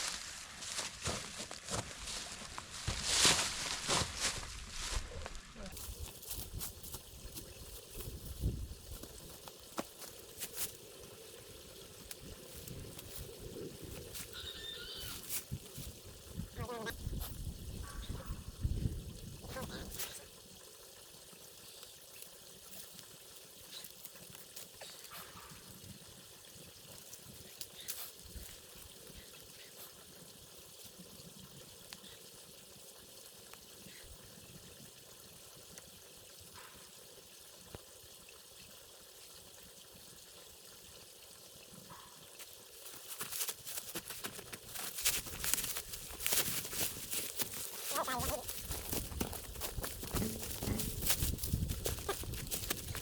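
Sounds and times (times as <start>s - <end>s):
rustling and crunching: 0.0s - 10.8s, 42.9s - 53.0s
water trickling: 5.8s - 53.0s.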